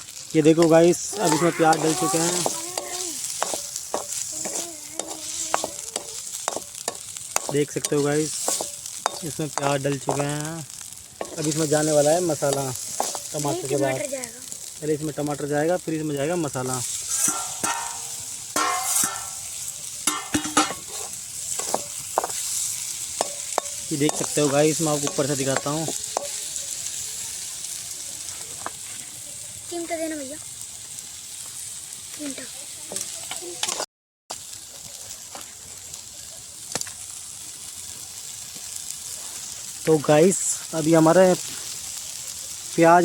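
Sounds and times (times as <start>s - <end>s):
onions sizzling in hot oil: 0.0s - 43.0s
spoon scraping a pan: 1.2s - 10.3s, 11.2s - 13.4s, 16.8s - 26.5s.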